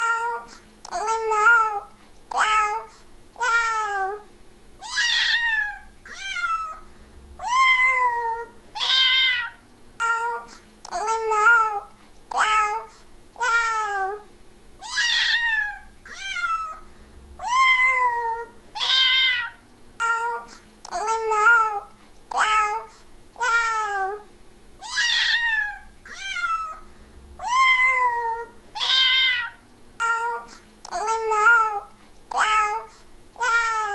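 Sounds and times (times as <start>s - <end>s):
cat meowing: 4.8s - 6.8s, 7.4s - 10.4s, 14.8s - 16.8s, 17.4s - 20.4s, 24.8s - 26.8s, 27.4s - 33.9s.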